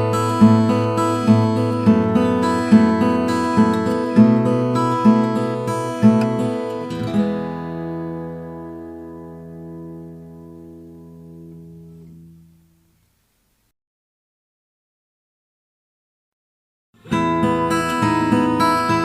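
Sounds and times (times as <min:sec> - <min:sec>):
acoustic guitar strumming: 0:00.0 - 0:12.9, 0:17.0 - 0:19.0.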